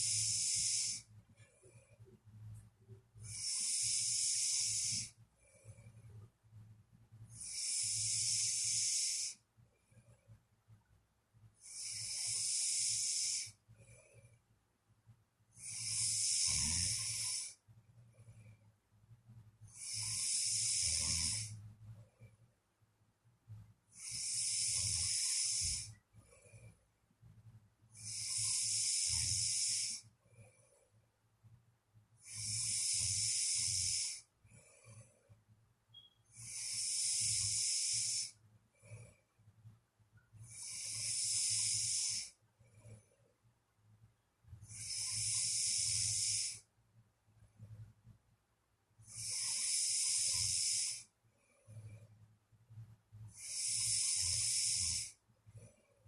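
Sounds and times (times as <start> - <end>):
person snoring: 0.0 - 1.1, 3.2 - 5.2, 7.3 - 9.4, 11.6 - 13.6, 15.6 - 17.6, 19.7 - 21.6, 24.0 - 26.0, 28.0 - 30.0, 32.2 - 35.0, 36.4 - 39.0, 40.4 - 42.4, 44.6 - 46.6, 49.0 - 51.1, 53.3 - 55.2.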